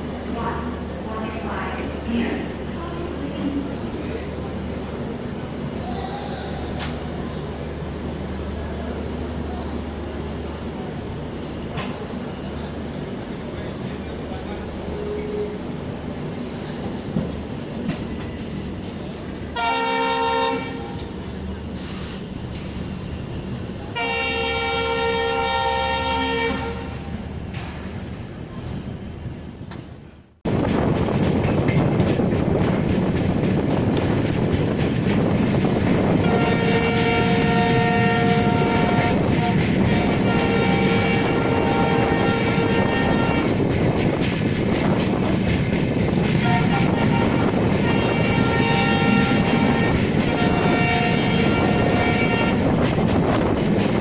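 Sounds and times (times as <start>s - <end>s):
moving train rumble: 0.0s - 54.0s
locomotive horn: 19.6s - 21.1s, 24.0s - 27.0s, 36.1s - 43.6s, 46.4s - 52.8s.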